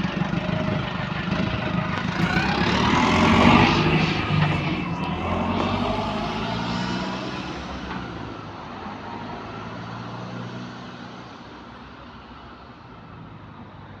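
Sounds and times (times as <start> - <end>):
diesel bus engine running: 0.0 - 9.0.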